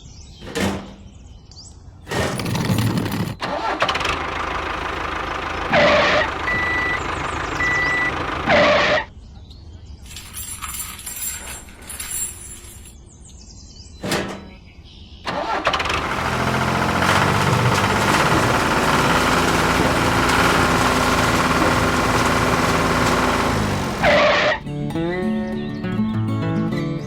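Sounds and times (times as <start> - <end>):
small motor running: 16.0 - 24.5.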